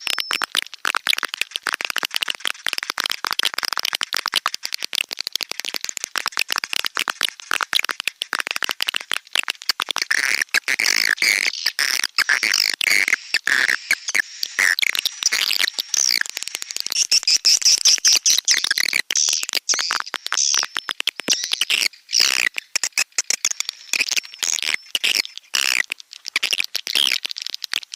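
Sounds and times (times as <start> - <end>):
swiftlets twittering: 12.9 - 19.5.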